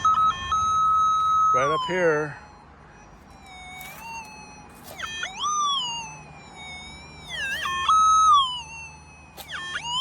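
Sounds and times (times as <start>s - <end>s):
metal detector whine: 0.0s - 10.0s.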